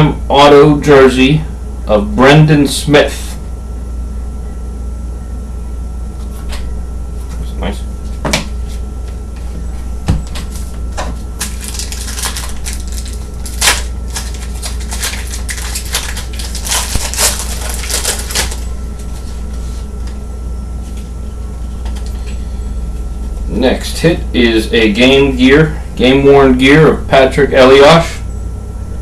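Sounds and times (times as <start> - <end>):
steady low hum: 0.0 - 29.0
card wrappers crinkling and tearing: 11.4 - 19.8.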